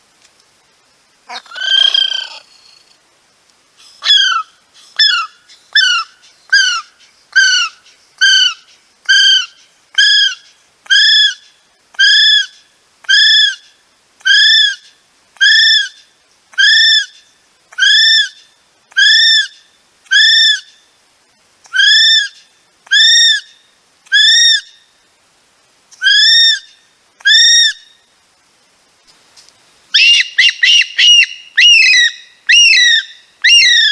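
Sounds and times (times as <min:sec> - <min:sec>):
kiwi high whistles: 0:30.0 - 0:33.9.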